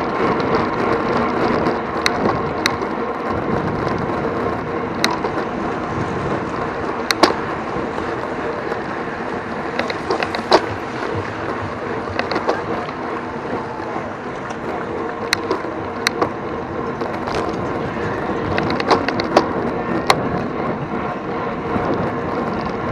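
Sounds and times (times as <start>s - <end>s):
bike sharp clicks: 0.0s - 22.9s
tyre and wind rush: 0.0s - 22.9s.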